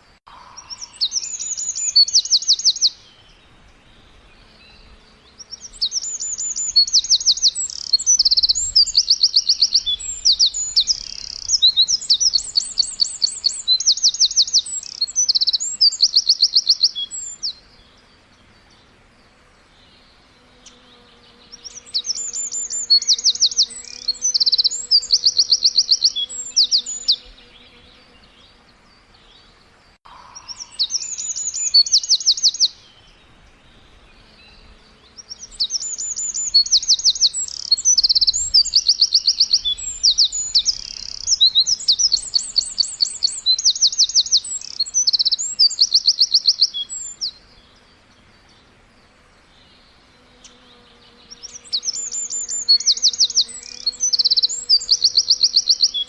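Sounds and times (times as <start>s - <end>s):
birds chirping trills: 0.0s - 56.0s.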